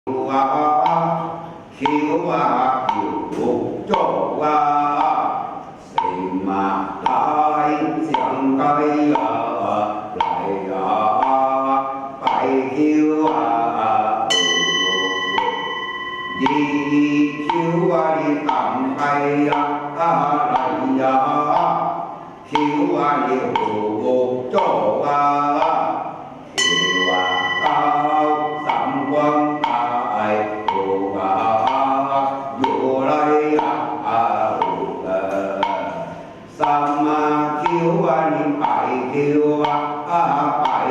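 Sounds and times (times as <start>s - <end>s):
voices chanting: 0.1s - 40.9s
struck object ringing: 14.3s - 20.8s, 26.6s - 32.8s.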